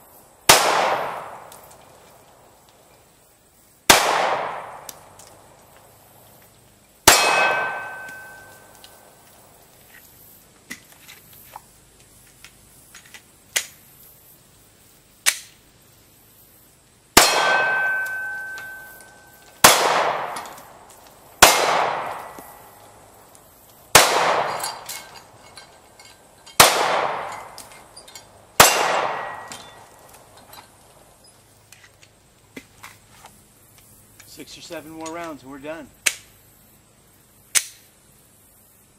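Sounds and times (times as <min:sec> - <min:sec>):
pistol shots: 0:00.5 - 0:01.5, 0:03.9 - 0:04.9, 0:07.0 - 0:08.7, 0:17.2 - 0:18.9, 0:19.6 - 0:20.7, 0:21.4 - 0:22.6, 0:23.9 - 0:25.0, 0:26.6 - 0:27.6, 0:28.6 - 0:29.8
steel target clanging: 0:07.1 - 0:08.8, 0:17.2 - 0:20.6, 0:24.0 - 0:30.7.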